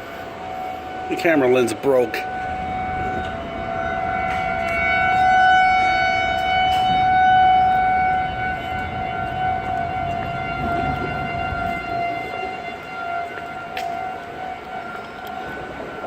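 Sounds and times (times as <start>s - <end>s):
warning siren wailing: 0.0s - 16.0s.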